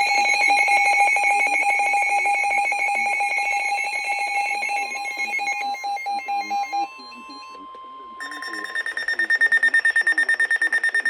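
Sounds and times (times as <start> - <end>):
pulsing electronic alert tone: 0.0 - 7.6.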